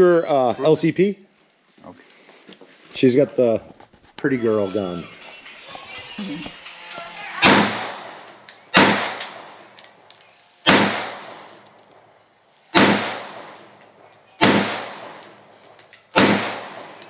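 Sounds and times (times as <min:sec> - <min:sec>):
pistol shots with echo: 0:07.4 - 0:09.8, 0:10.6 - 0:11.6, 0:12.7 - 0:15.5, 0:16.1 - 0:17.0.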